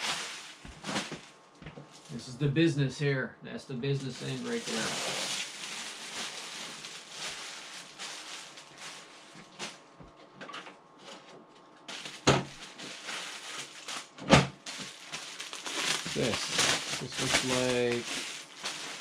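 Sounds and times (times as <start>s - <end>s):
packaging rustling: 0.0s - 1.3s, 4.1s - 9.8s, 11.9s - 19.0s.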